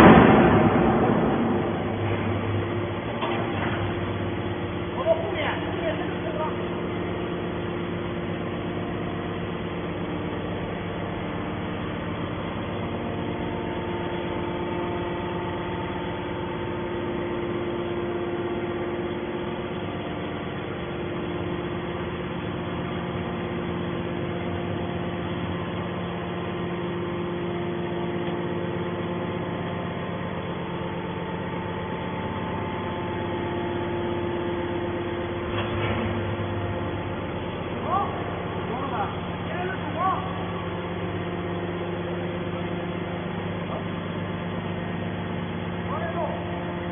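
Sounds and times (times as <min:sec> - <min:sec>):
hydraulic machine hum: 0:00.0 - 0:46.9.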